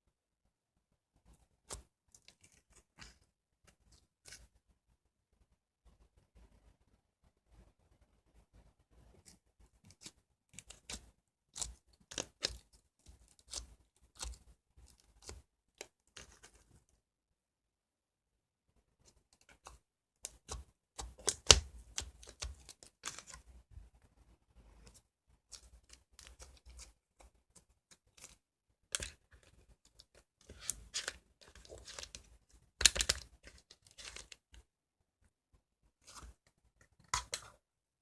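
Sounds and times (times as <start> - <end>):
sticky slime crackling: 9.9 - 15.4, 20.2 - 23.5.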